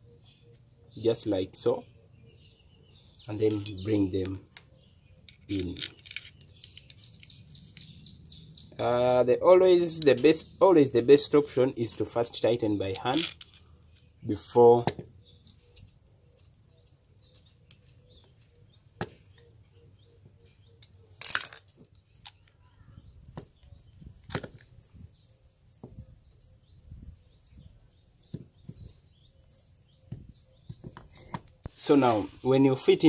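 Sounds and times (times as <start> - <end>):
small birds chirping: 0.0 - 33.0
metal parts knocking and clinking: 3.3 - 8.0, 11.9 - 14.2, 20.8 - 22.5.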